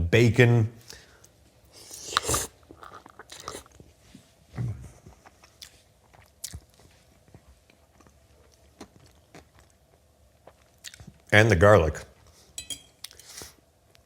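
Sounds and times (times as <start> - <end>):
chewing with soft crunches: 1.2 - 11.3
wet mouth smacks: 2.0 - 3.6.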